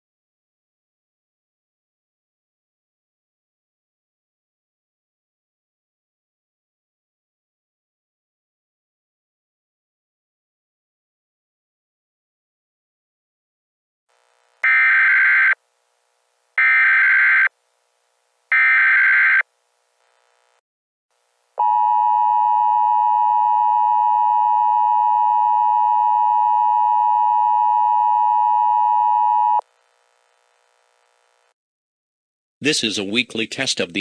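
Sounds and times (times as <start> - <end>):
digital data tone bursts: 14.6 - 15.6, 16.6 - 17.5, 18.5 - 19.4
two-tone attention signal: 14.6 - 15.6.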